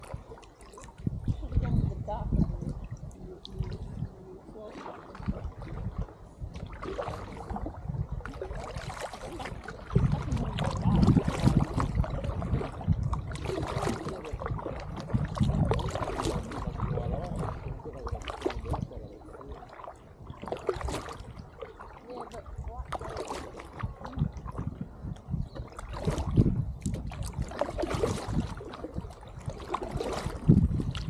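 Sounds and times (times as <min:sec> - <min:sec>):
low rumbling: 0:00.0 - 0:31.0
paddle splashing water: 0:00.0 - 0:31.0.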